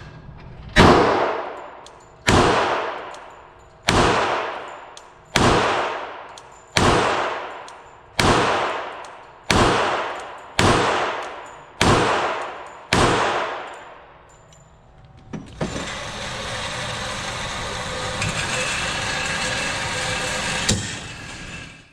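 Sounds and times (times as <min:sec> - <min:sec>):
pistol shots echoing: 0:00.8 - 0:14.4.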